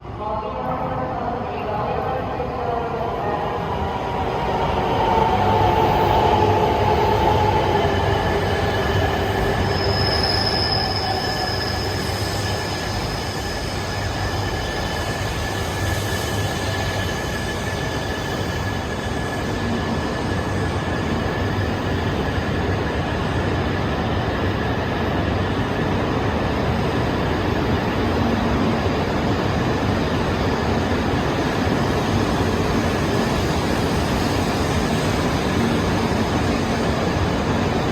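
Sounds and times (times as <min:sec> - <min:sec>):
train brakes high squeal: 0:05.6 - 0:22.7.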